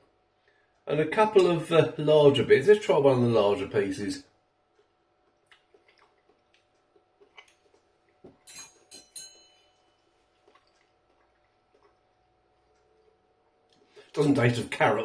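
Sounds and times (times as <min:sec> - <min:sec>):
eating carrot: 0:04.8 - 0:08.2, 0:10.3 - 0:13.1
cutlery clicks and taps: 0:08.4 - 0:09.6.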